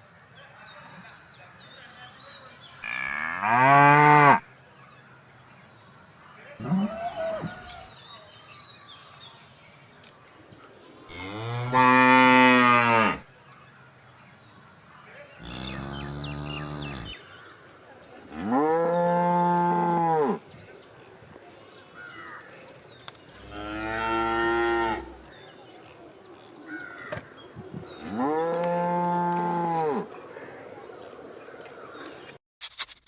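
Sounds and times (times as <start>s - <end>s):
cow mooing: 15.4s - 17.1s, 23.4s - 25.3s, 28.0s - 30.1s.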